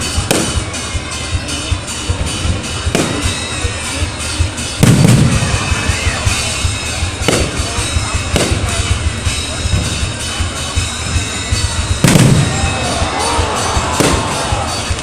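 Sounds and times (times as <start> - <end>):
fireworks bangs and booms: 0.0 - 15.0
fireworks crackling: 0.0 - 15.0
music playing: 0.0 - 15.0.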